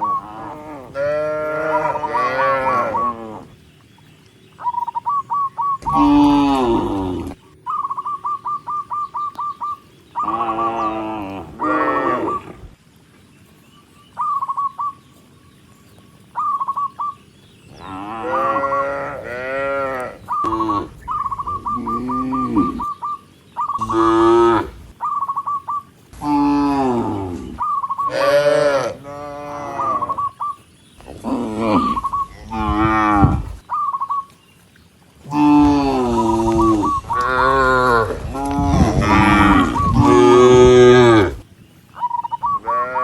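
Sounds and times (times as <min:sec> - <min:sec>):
cattle mooing: 0:00.0 - 0:03.6, 0:05.8 - 0:07.4, 0:10.2 - 0:12.7, 0:17.8 - 0:21.0, 0:21.7 - 0:22.9, 0:23.8 - 0:24.9, 0:26.2 - 0:30.2, 0:31.0 - 0:33.6, 0:35.3 - 0:41.4, 0:42.6 - 0:43.0.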